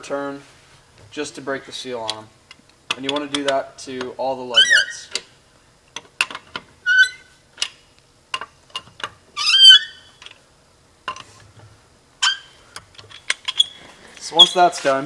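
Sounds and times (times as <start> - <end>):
shrill metallic squeals: 4.5 - 5.1, 6.8 - 7.3, 9.4 - 10.1, 12.2 - 12.6, 13.5 - 14.7.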